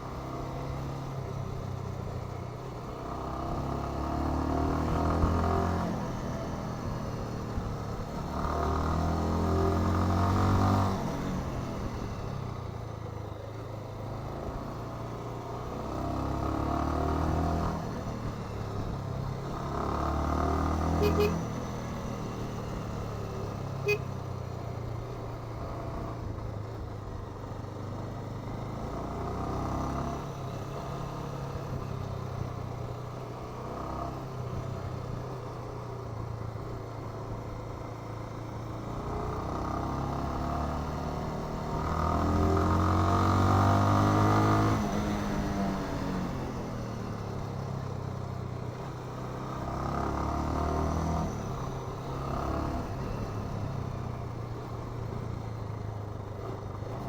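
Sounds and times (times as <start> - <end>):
motorcycle engine revving: 19.4 - 24.2.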